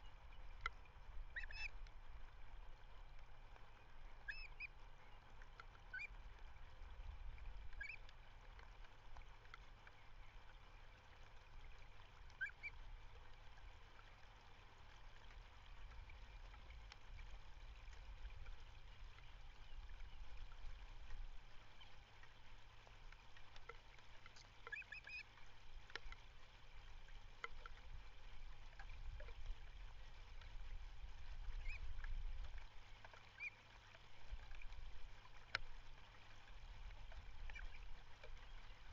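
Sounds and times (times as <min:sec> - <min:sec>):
bird calls: 0:01.3 - 0:01.8, 0:04.2 - 0:05.3, 0:05.9 - 0:06.2, 0:07.7 - 0:08.0, 0:12.4 - 0:12.8, 0:24.4 - 0:25.2, 0:31.6 - 0:31.9, 0:33.3 - 0:33.6
wind rumbling on microphone: 0:05.9 - 0:08.0, 0:27.0 - 0:33.0.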